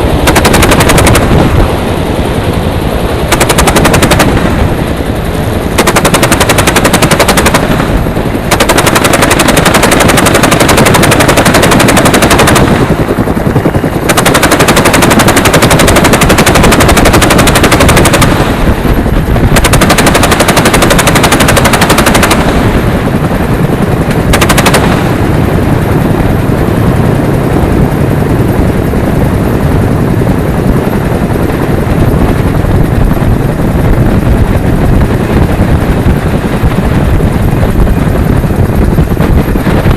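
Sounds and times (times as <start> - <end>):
automatic gunfire bursts: 0.1 - 1.6, 3.1 - 4.9, 5.6 - 13.0, 14.0 - 18.8, 19.5 - 22.9, 24.2 - 25.2.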